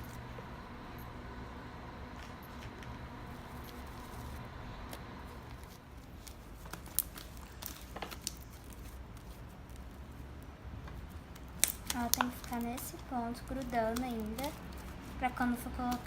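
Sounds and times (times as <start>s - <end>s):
slime squishing: 5.6s - 10.3s, 11.0s - 16.0s
sticky clicks and pops: 11.3s - 14.7s.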